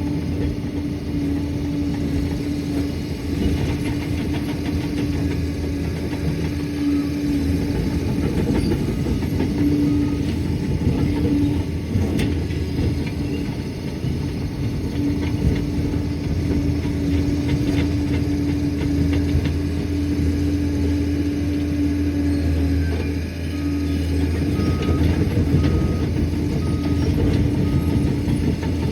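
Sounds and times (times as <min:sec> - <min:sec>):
diesel engine rumbling: 0:00.0 - 0:28.9.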